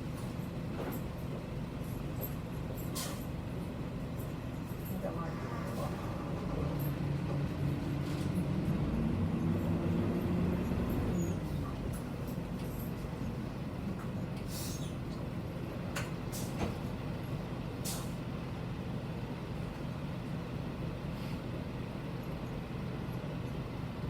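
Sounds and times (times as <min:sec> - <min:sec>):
diesel bus engine: 0:00.0 - 0:24.0
road rumble: 0:00.0 - 0:24.0
short air hisses: 0:14.5 - 0:14.9.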